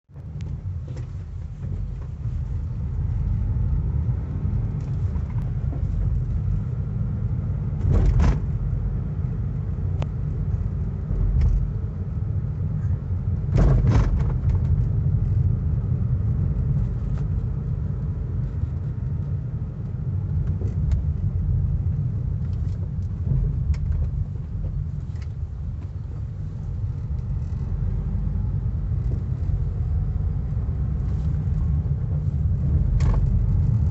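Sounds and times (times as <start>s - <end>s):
road and tyre rumble: 0.0s - 33.9s
suspension knocks and rattles: 7.7s - 8.7s, 13.5s - 15.5s, 31.0s - 33.9s.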